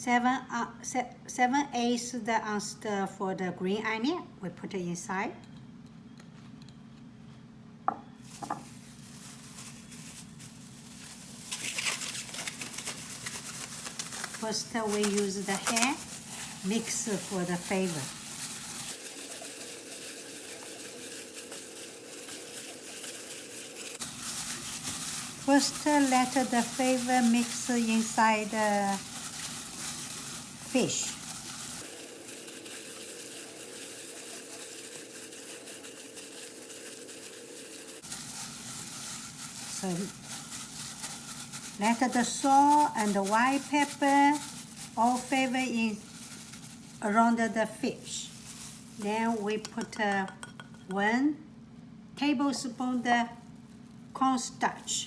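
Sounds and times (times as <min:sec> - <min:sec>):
hands mixing fish in marinade: 0:08.2 - 0:51.1.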